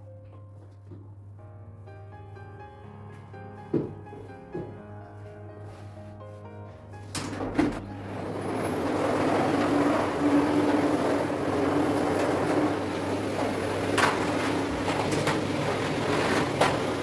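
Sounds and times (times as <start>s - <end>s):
appliance running hum with whine: 7.6s - 17.0s.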